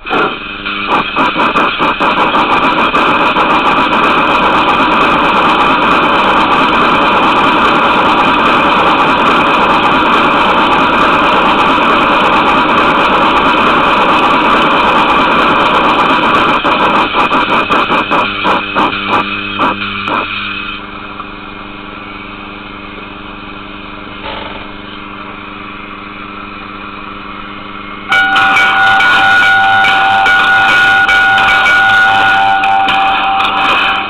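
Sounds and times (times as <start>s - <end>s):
mallet roll ringing tones: 28.1s - 34.0s.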